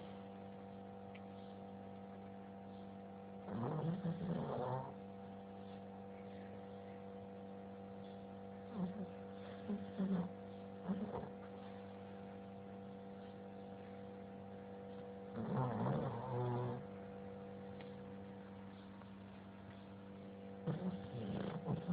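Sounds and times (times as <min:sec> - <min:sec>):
steady electrical hum: 0:00.0 - 0:21.9
person snoring and snorting: 0:03.5 - 0:05.0, 0:08.7 - 0:11.3, 0:15.4 - 0:16.8, 0:20.7 - 0:21.9.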